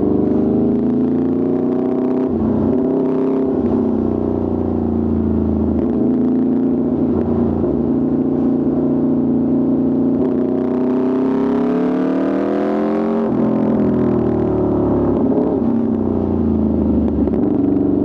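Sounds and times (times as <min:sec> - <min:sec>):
motorcycle engine revving: 0:09.2 - 0:18.0.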